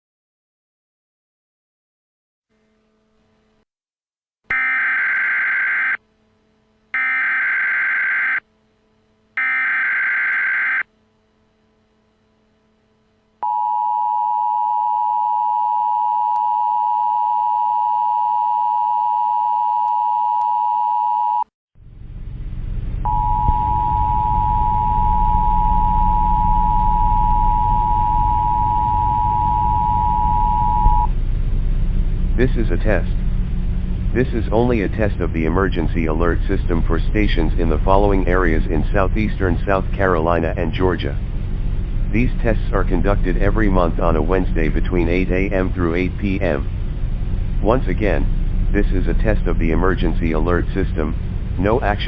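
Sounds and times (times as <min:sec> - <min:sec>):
screeching digital header bursts: 0:04.5 - 0:06.0, 0:07.0 - 0:08.4, 0:09.4 - 0:10.8
two-tone attention signal: 0:04.5 - 0:06.0, 0:07.0 - 0:08.4, 0:09.4 - 0:10.8, 0:23.1 - 0:31.1.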